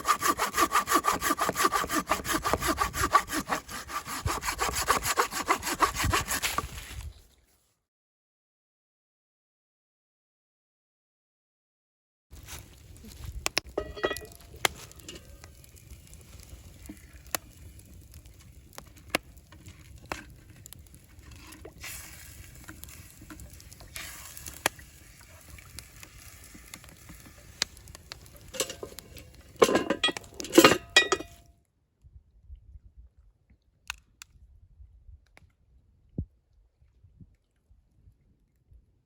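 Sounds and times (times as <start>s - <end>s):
metal cookware clinking and scraping: 13.7s - 15.5s, 28.4s - 31.4s
sizzling hiss: 20.7s - 29.6s.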